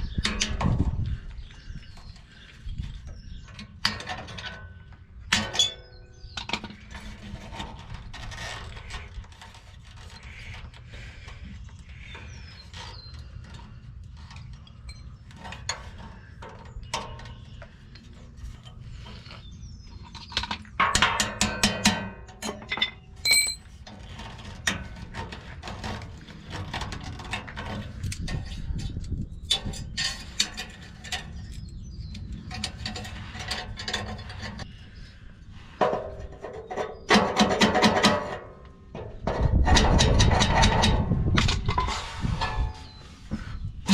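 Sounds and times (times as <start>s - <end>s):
hand tools clicking and knocking: 3.5s - 11.0s, 20.0s - 34.7s, 35.8s - 43.0s.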